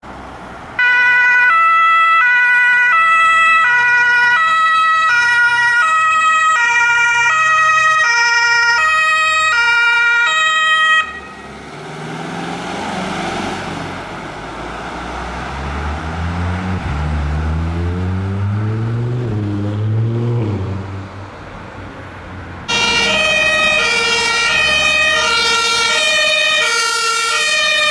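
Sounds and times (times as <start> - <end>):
two-tone emergency siren: 0.8 - 11.5, 22.7 - 27.9
vehicle engine accelerating: 11.4 - 27.9.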